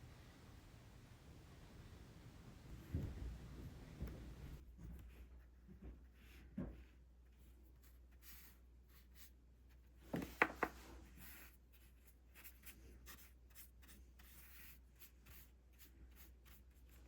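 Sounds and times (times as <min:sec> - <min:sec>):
brush tapping on paper: 0:10.1 - 0:11.4
brush scratching on paper: 0:10.9 - 0:17.0.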